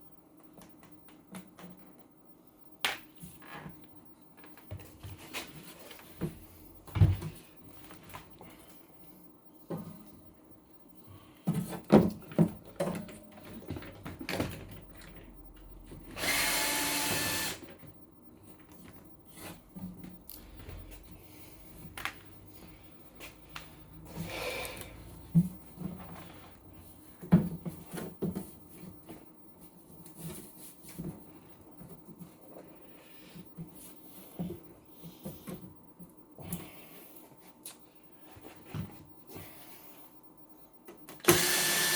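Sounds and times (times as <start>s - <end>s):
electric drill running: 16.2s - 17.7s, 41.2s - 41.9s.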